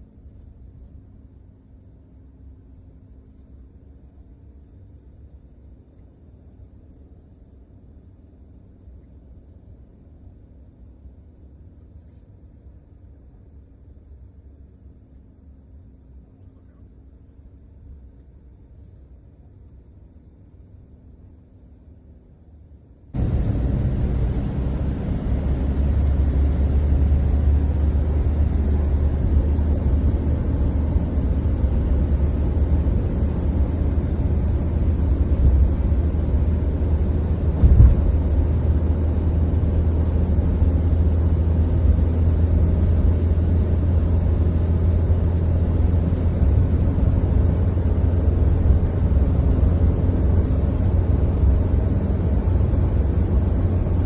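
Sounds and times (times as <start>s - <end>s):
car road and engine rumble: 0.0s - 54.0s
brief thump: 37.6s - 38.1s.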